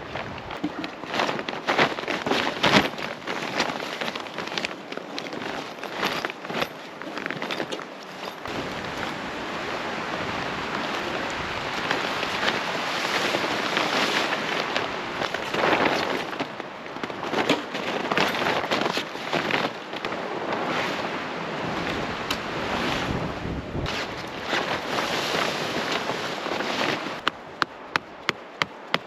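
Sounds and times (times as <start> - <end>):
wind buffeting microphone: 0.0 - 3.3, 18.1 - 29.0.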